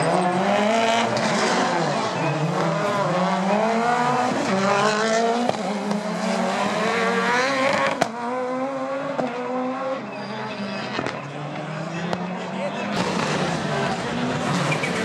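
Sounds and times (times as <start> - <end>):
car engine accelerating: 0.0 - 15.0.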